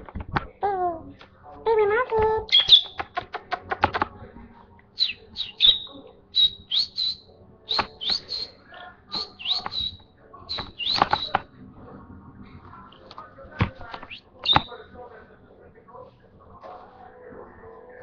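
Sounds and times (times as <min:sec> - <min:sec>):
lovebird chirping: 0:02.5 - 0:03.2, 0:05.0 - 0:11.5, 0:14.0 - 0:14.8.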